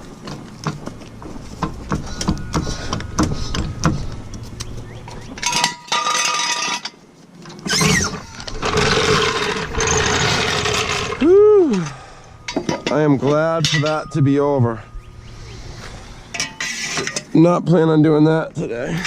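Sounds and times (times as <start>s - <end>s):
metal rattling: 5.3s - 11.2s, 11.8s - 14.9s
metal tools clinking: 5.4s - 11.2s, 11.8s - 15.0s, 16.3s - 17.4s.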